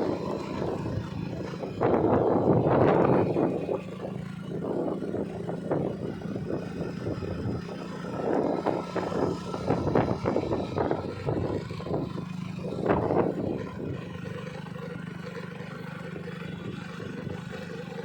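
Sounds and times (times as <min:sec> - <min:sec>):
gusty rumbling: 0:00.0 - 0:14.1.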